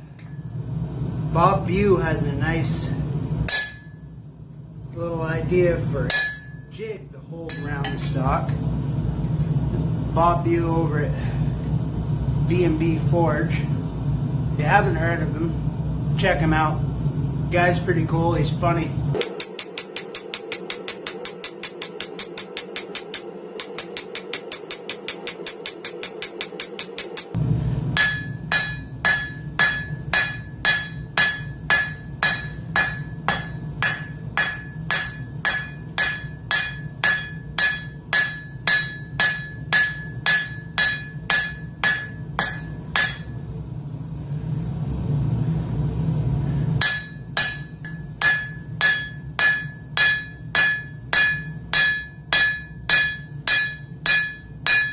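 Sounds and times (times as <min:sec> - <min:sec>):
steady low rumble: 0:00.0 - 0:54.9
hammer striking steel on anvil: 0:03.5 - 0:04.1, 0:06.0 - 0:06.8, 0:07.4 - 0:08.2, 0:19.2 - 0:27.4, 0:28.0 - 0:43.4, 0:46.8 - 0:54.9.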